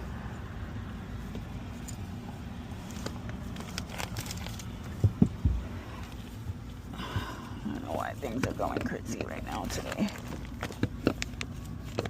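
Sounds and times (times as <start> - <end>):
steady low rumble: 0.0 - 12.0
short dull thumps: 5.0 - 5.7.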